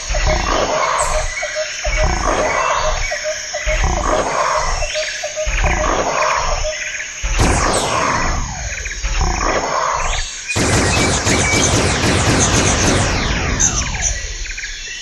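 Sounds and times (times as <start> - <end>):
animal roaring and growling: 1.9 - 10.2.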